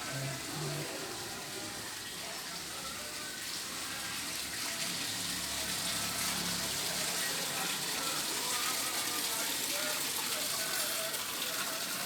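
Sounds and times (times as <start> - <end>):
rain falling steadily: 0.0 - 12.0.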